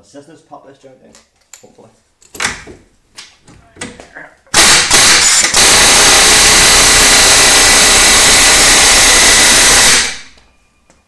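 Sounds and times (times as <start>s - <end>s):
electric impact wrench running: 4.6s - 10.4s.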